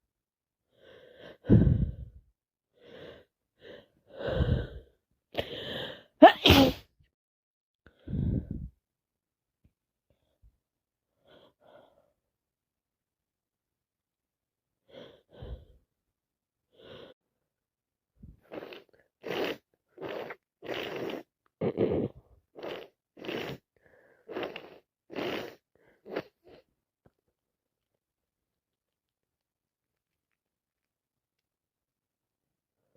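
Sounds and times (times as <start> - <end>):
woman's congested sneeze-like bursts: 6.2 - 6.9.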